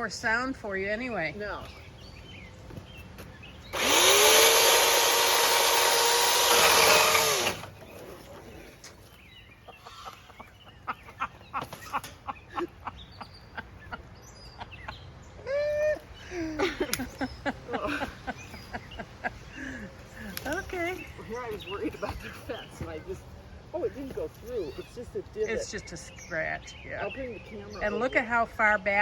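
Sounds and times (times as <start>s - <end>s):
chainsaw running: 3.7s - 8.0s.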